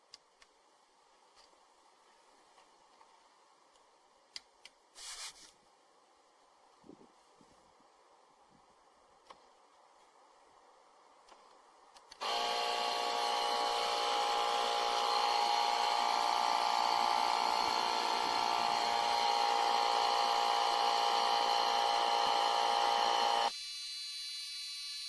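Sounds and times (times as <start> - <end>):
compressor motor running: 12.2 - 23.5.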